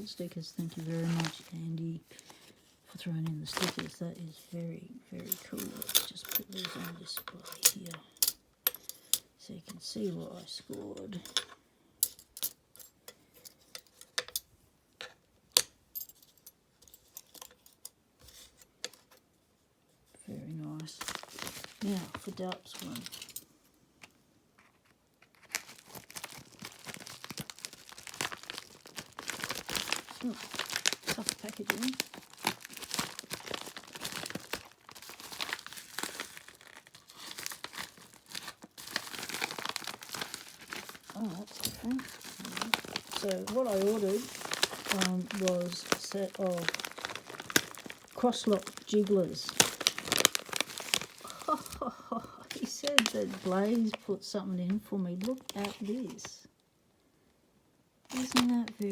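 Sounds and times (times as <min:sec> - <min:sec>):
packaging crinkling and tearing: 0:00.0 - 0:04.4, 0:20.7 - 0:23.4, 0:24.6 - 0:56.3, 0:58.1 - 0:58.9.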